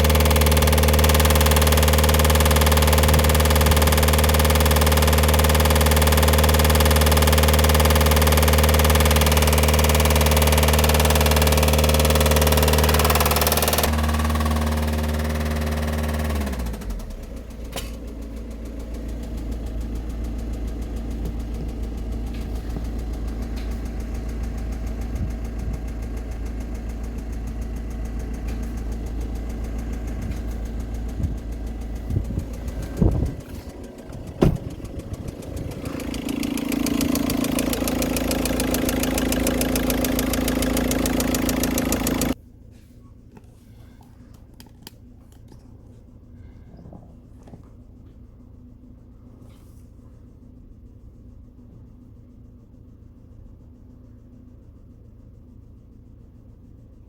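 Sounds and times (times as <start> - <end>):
diesel engine idling with knocking: 0.0 - 42.4
steady low hum: 13.8 - 57.0.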